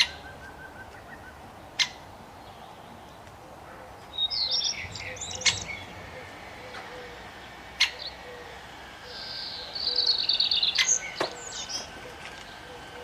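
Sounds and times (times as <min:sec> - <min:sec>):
songbirds singing: 0:00.0 - 0:13.0
fast high bird trill: 0:04.2 - 0:13.0.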